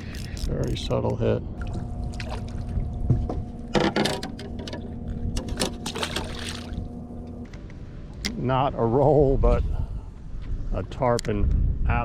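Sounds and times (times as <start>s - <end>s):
boat motor humming: 0.0s - 10.6s
water splashes: 1.6s - 3.0s, 5.7s - 6.9s.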